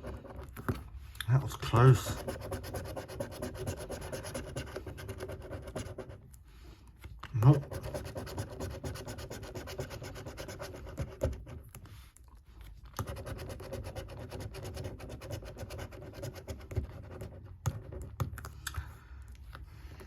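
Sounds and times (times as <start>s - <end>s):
scratchcard being scratched: 7.5s - 11.3s.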